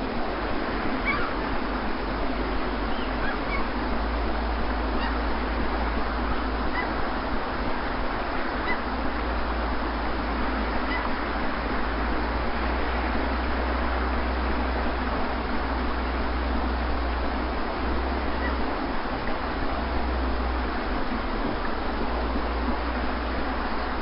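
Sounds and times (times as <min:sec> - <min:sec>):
sea surf: 0:00.0 - 0:24.0
short bird calls: 0:01.0 - 0:01.4, 0:02.9 - 0:03.8.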